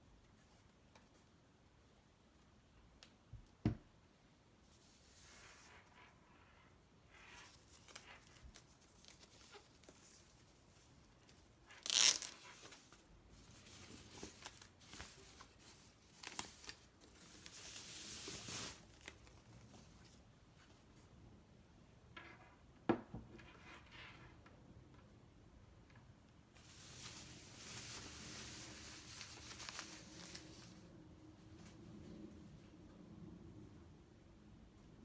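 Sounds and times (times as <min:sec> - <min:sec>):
packaging tearing: 0:11.7 - 0:12.8
packaging rustling: 0:11.7 - 0:20.0, 0:26.6 - 0:30.8.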